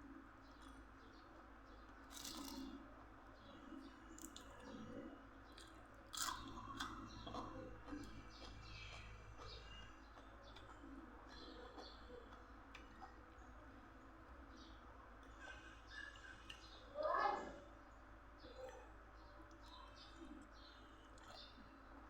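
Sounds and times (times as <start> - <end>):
close-up chewing and mouth sounds: 0.4 - 14.0, 18.4 - 22.0
small clicks and crunches: 2.0 - 2.8.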